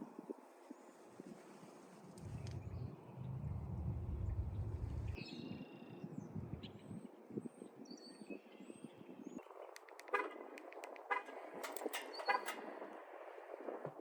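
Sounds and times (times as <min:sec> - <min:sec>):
faint bird chirps: 0:02.2 - 0:09.5
sharp clicks: 0:09.7 - 0:12.8.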